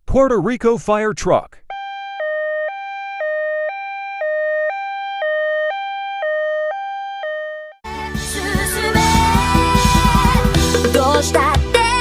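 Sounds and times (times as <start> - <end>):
two-tone fire truck siren: 1.7 - 7.8.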